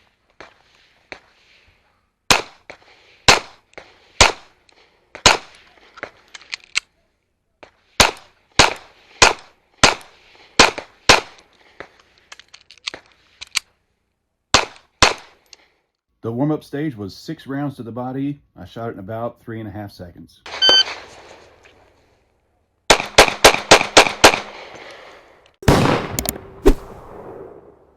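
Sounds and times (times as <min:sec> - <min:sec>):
pistol shots: 0:14.5 - 0:15.3, 0:22.9 - 0:24.6, 0:25.6 - 0:27.7.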